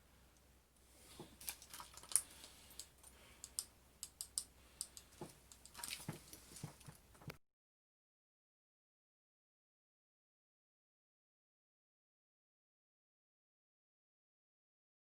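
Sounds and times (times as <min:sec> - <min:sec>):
light irregular clicks and taps: 0:01.2 - 0:07.4.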